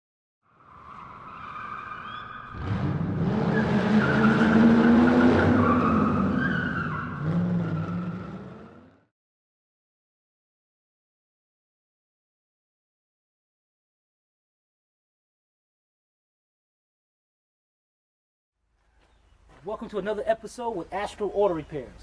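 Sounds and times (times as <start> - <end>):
car engine revving: 2.5 - 9.1
tyre squeal: 3.5 - 8.2.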